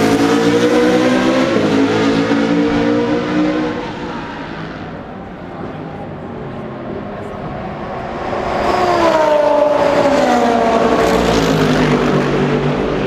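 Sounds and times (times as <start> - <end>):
race car engine passing by: 7.0 - 13.0.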